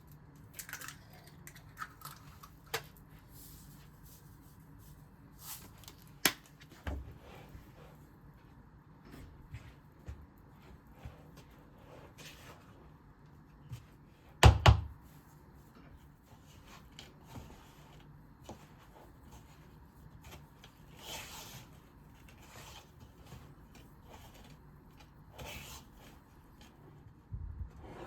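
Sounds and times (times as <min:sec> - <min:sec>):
soft rustles: 0:03.1 - 0:14.2.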